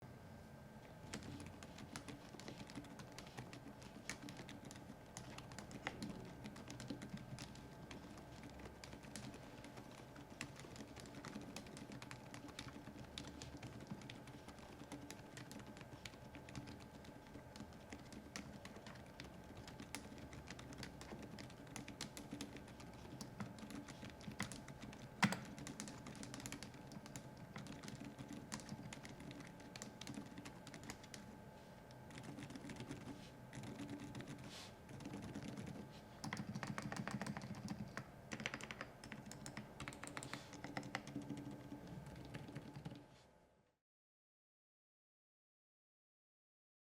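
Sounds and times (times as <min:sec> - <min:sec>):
quiet keyboard keystrokes: 0:01.0 - 0:31.3, 0:31.9 - 0:43.0.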